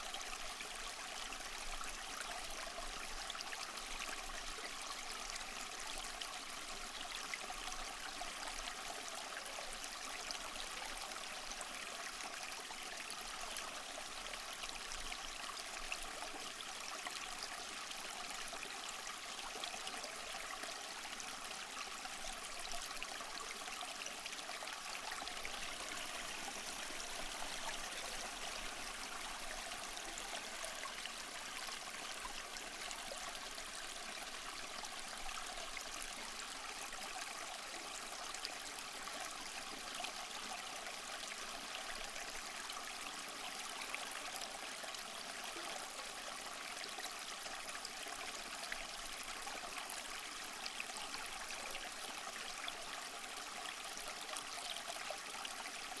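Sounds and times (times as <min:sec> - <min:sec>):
small waterfall splashing: 0:18.9 - 0:50.8.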